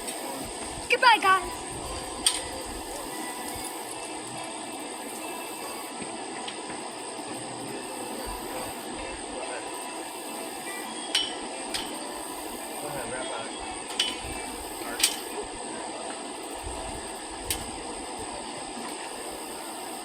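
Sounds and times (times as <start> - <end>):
outdoor background noise: 0.0 - 20.0.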